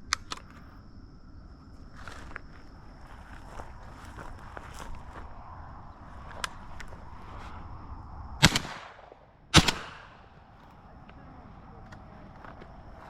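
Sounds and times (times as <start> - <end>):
shotgun shots: 8.4 - 10.4.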